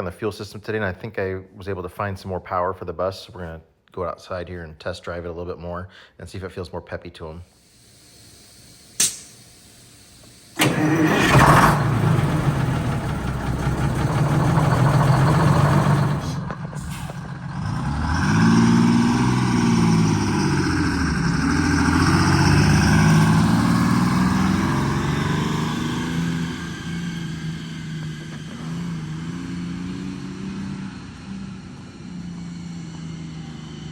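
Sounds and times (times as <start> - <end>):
diesel bus engine revving: 9.9 - 33.9.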